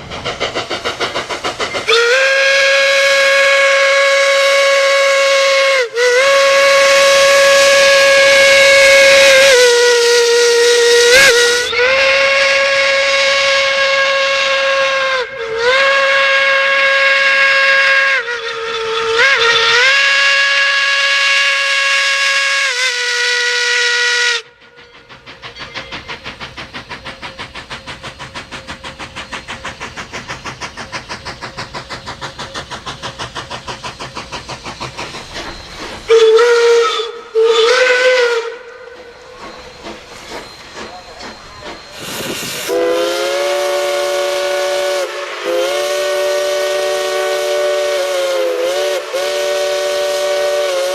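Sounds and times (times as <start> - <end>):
locomotive chugging beat: 0.0 - 14.6, 24.6 - 50.9
steam locomotive whistle: 1.8 - 25.8, 35.2 - 50.9.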